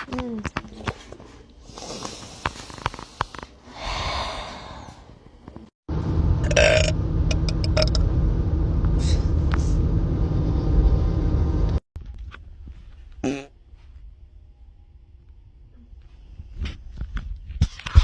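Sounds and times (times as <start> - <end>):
person burping loudly: 6.4 - 7.0.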